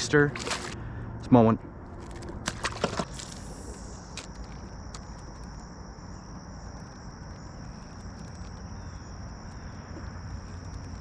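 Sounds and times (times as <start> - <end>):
insects trilling: 2.8 - 11.0.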